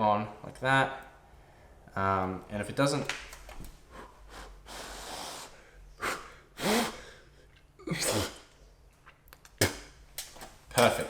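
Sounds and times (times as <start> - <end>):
man hawking and spitting: 4.3 - 10.0.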